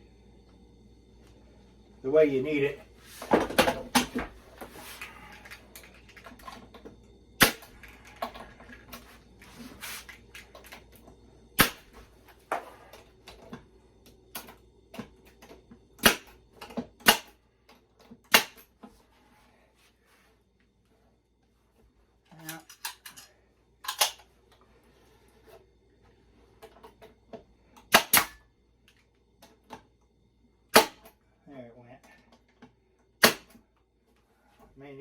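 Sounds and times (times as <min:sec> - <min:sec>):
staple gun shots into plywood: 0:07.4 - 0:07.7, 0:11.6 - 0:11.9, 0:16.0 - 0:16.4, 0:17.0 - 0:17.4, 0:18.3 - 0:18.6, 0:27.9 - 0:28.4, 0:30.7 - 0:31.1, 0:33.2 - 0:33.6.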